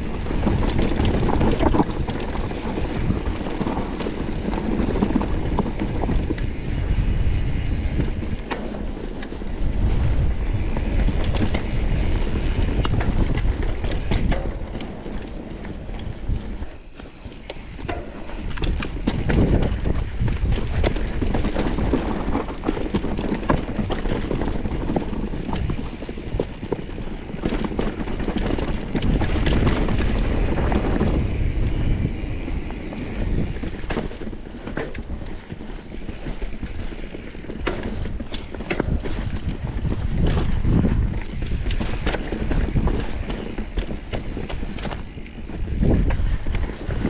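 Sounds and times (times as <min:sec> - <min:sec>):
bike rattling and clattering: 0:00.0 - 0:47.0
wind rumble on microphone: 0:00.0 - 0:47.0
tyres crunching over stones: 0:12.6 - 0:47.0.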